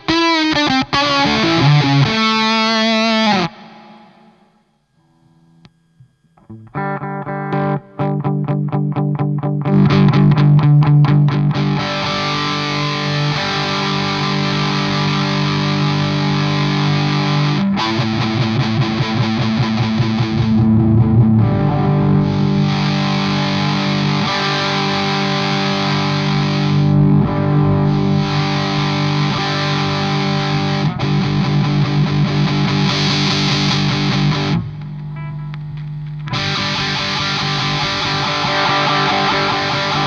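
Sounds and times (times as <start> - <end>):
distorted electric guitar chords: 0.0 - 40.0.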